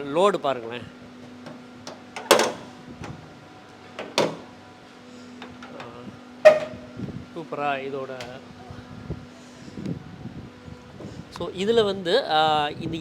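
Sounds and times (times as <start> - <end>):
metal cargo box clunks: 0.6 - 3.2, 3.9 - 4.6, 5.4 - 7.0.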